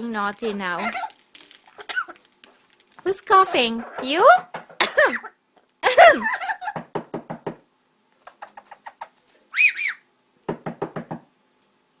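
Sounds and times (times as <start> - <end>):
parrot whistled notes: 9.6 - 10.0.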